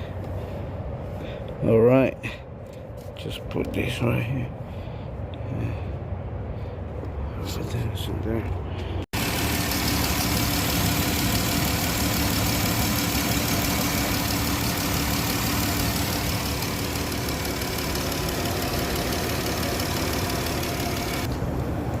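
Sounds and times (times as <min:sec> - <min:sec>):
car engine idling: 0:09.2 - 0:22.0.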